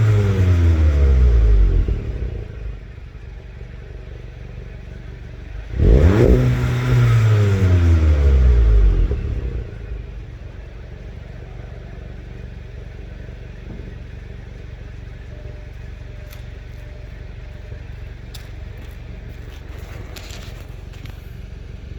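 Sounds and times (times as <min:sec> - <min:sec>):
car engine revving and idling: 0:00.0 - 0:21.9.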